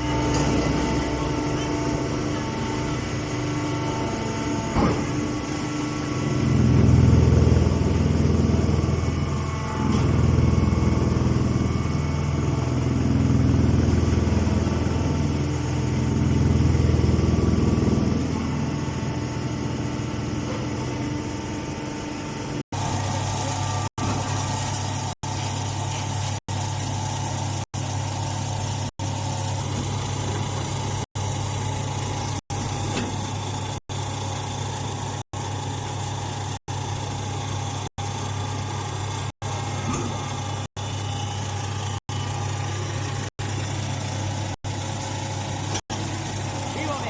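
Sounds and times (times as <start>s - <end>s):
hydraulic motor and pump humming: 0.0s - 47.0s.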